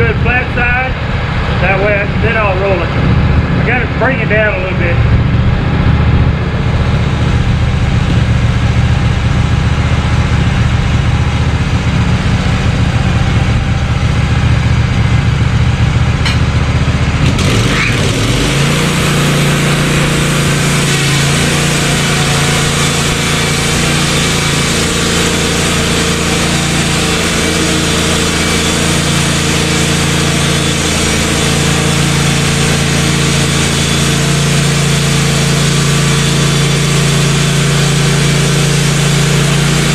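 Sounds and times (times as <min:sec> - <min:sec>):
sawmill engine running: 0:00.0 - 0:39.9
saw cutting log: 0:17.2 - 0:39.9.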